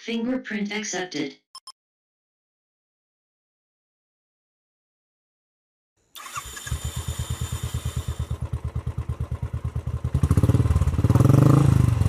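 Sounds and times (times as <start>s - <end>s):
motorcycle engine starting and running: 6.1s - 12.0s.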